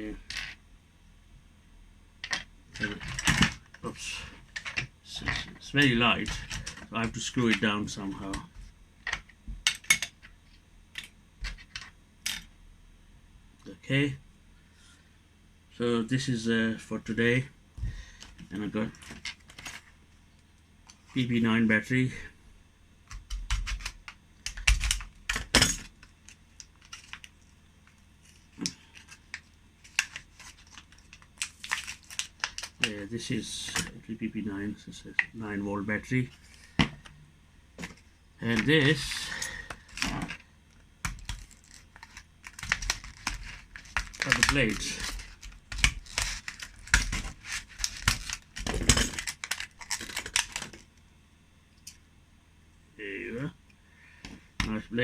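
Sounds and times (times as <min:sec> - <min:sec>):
packaging crinkling and tearing: 0:28.3 - 0:33.0, 0:41.0 - 0:50.8.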